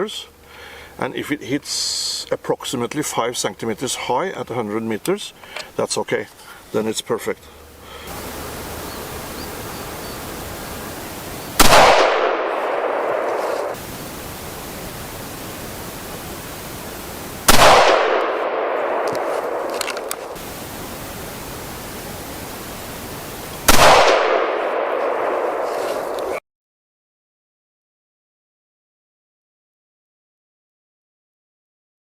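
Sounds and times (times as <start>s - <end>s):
steady hiss: 0.0s - 26.4s
rifle shots echoing: 8.1s - 13.8s, 17.4s - 20.4s, 23.6s - 26.3s.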